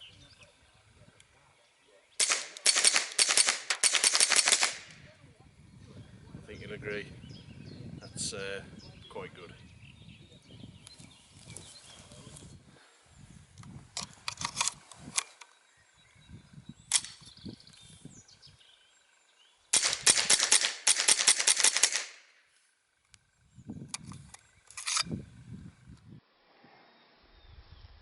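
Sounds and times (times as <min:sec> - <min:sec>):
rifle shots rapid cracks: 0:02.2 - 0:05.0, 0:19.7 - 0:22.3
gun handling clicks and knocks: 0:13.6 - 0:15.5, 0:16.9 - 0:17.4, 0:23.9 - 0:25.1.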